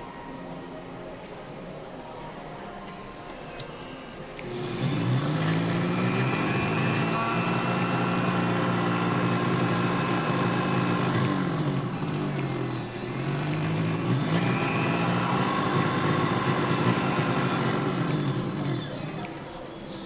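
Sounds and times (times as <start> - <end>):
short beep: 3.5 - 4.2
blender motor spinning: 4.4 - 19.4.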